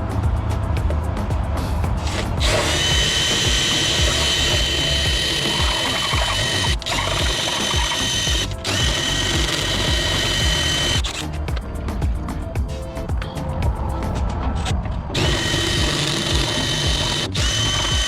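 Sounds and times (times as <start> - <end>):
power drill motor whining: 2.0 - 11.2, 15.2 - 18.0.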